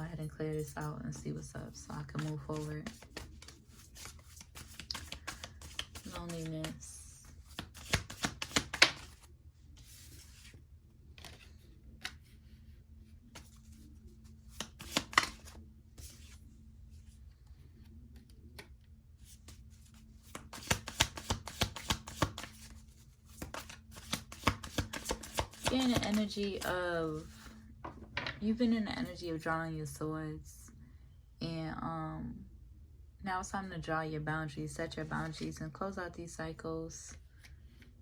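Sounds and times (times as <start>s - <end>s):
cards being shuffled: 1.7s - 12.5s, 13.3s - 16.4s, 18.2s - 28.3s.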